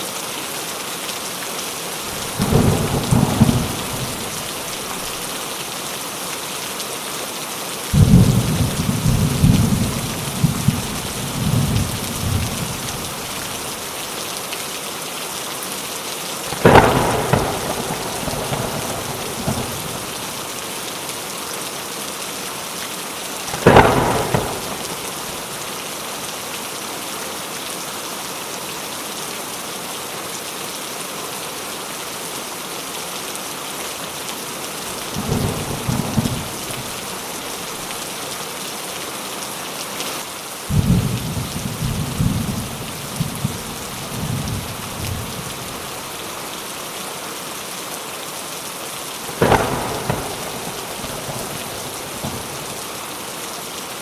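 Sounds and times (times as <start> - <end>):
heavy rain hissing: 0.0 - 27.6, 31.4 - 54.0
loud thunderclaps: 2.1 - 4.9, 8.0 - 13.4, 16.5 - 20.2, 23.5 - 25.6, 35.0 - 37.2, 40.7 - 45.8, 49.3 - 52.8
low thunder rumbles: 2.1 - 5.2, 8.0 - 13.6, 16.5 - 20.4, 23.5 - 25.6, 35.0 - 37.6, 40.7 - 46.0, 49.3 - 53.0.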